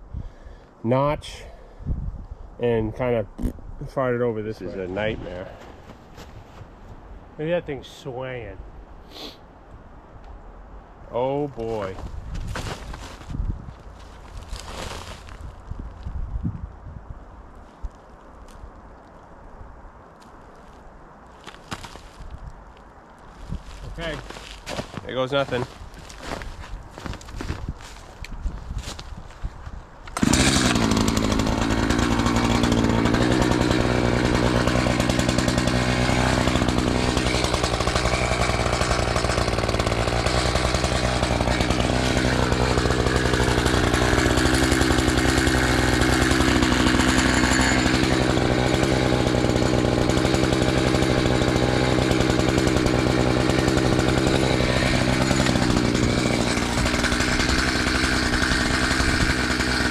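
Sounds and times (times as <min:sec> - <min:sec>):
chainsaw cutting tree: 0:30.1 - 0:59.9.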